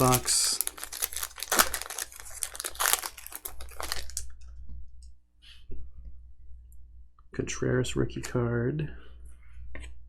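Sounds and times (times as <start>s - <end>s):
foil wrapper crinkling: 0.0s - 4.3s.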